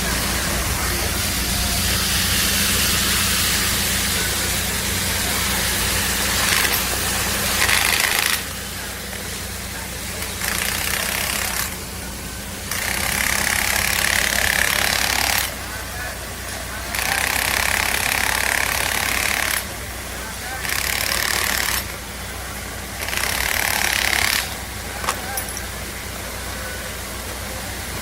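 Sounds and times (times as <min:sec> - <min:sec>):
engine-like hum: 0:00.0 - 0:28.0
loud steady hiss: 0:00.0 - 0:28.0.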